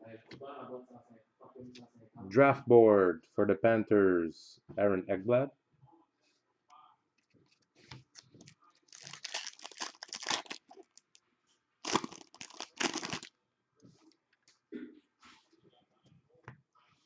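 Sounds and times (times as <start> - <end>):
wrapper crinkling and tearing: 8.1 - 11.2, 11.8 - 13.3.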